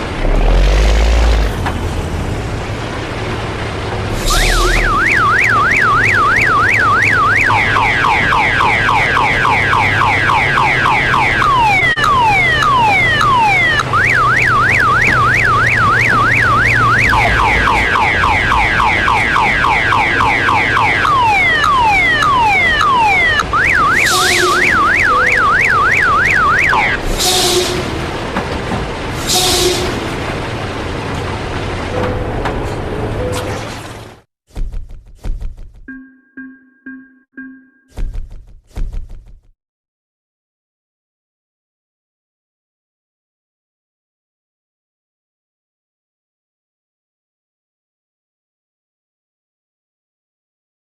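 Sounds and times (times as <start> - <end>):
low diesel engine hum: 0.0 - 6.7
electronic alarm siren: 4.2 - 27.0.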